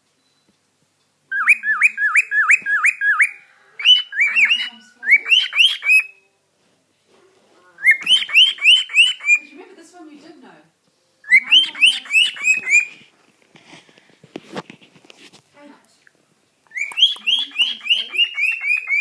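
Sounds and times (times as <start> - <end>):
cockatiel whistling song: 1.3 - 6.3, 7.8 - 9.5, 11.2 - 13.0, 16.7 - 19.0.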